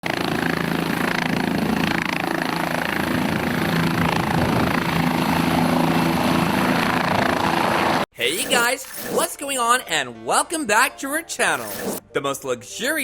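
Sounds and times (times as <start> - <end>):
helicopter running: 0.0 - 9.5, 11.5 - 12.0.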